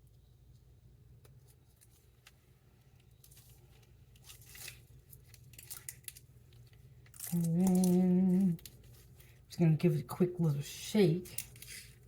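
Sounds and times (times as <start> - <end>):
low room hum: 0.0 - 12.0.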